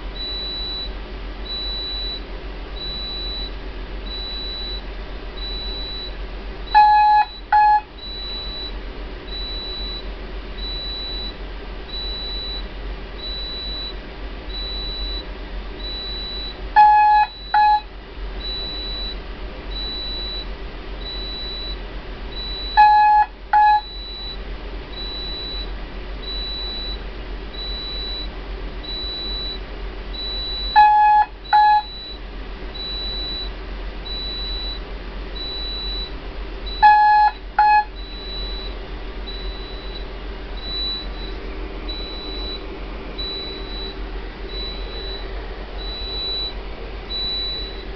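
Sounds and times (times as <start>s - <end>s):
steady low hum: 0.0s - 47.9s
alarm panel pulsed beep: 0.2s - 0.9s, 1.5s - 2.2s, 2.8s - 3.5s, 4.1s - 4.8s, 5.4s - 8.7s, 9.3s - 10.0s, 10.6s - 12.6s, 13.2s - 15.2s, 15.8s - 20.4s, 21.0s - 21.8s, 22.4s - 27.0s, 27.6s - 29.6s, 30.2s - 32.2s, 32.8s - 33.5s, 34.1s - 34.8s, 35.4s - 42.6s, 43.2s - 47.9s
low double buzz: 35.4s - 47.9s.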